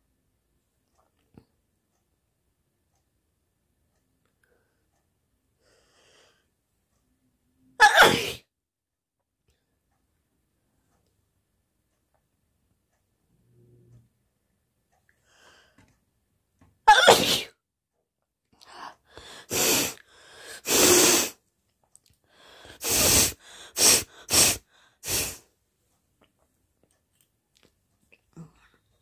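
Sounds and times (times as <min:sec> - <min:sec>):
woman sneezing: 0:07.8 - 0:08.4, 0:16.9 - 0:17.5
woman blowing her nose: 0:19.4 - 0:21.4, 0:22.7 - 0:25.4.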